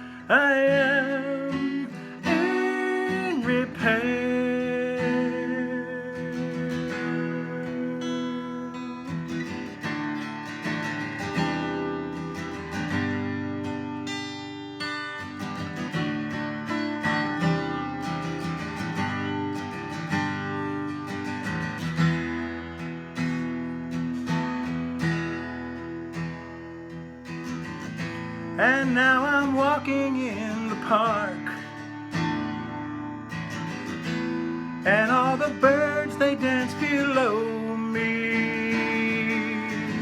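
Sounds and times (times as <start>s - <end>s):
acoustic guitar chords: 0.0s - 40.0s.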